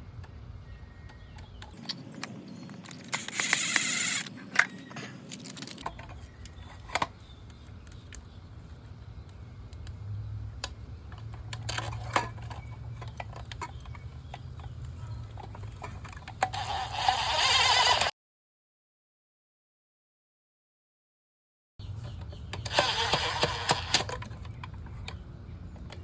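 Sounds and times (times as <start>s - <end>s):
screws clicking and rattling: 2.8s - 7.0s, 15.2s - 18.1s
scratchy burst: 3.0s - 4.4s.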